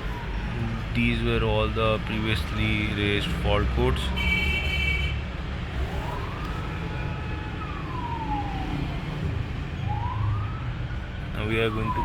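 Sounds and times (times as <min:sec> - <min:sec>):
siren wailing: 0:05.9 - 0:12.0.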